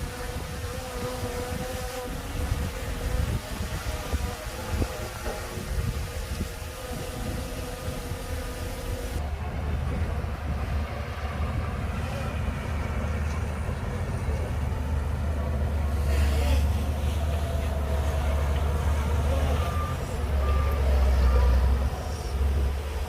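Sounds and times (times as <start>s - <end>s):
bulldozer diesel engine rumbling: 7.2s - 23.0s.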